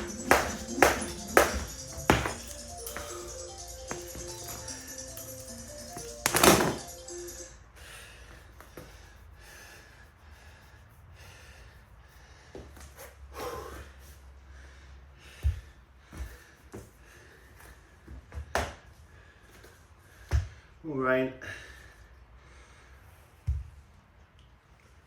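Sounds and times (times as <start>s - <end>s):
music: 0.0s - 7.6s
person breathing hard: 7.8s - 18.1s, 21.4s - 23.4s.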